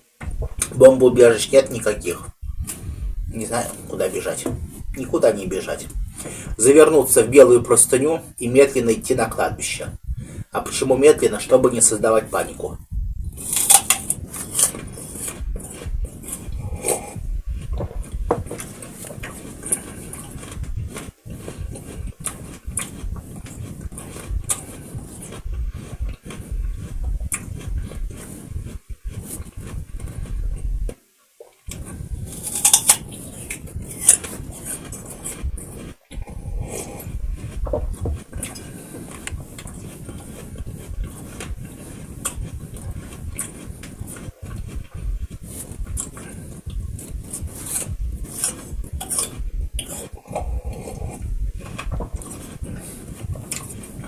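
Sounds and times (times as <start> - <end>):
sharp crunch: 0.2 - 31.0, 31.7 - 54.0
chewing: 0.2 - 54.0.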